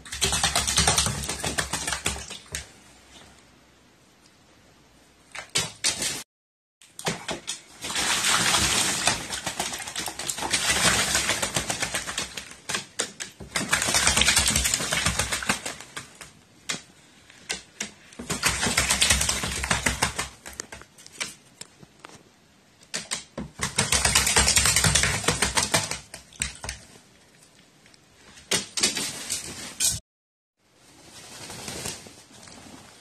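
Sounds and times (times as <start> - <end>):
bird wings splashing water: 6.9 - 16.2, 18.2 - 20.5.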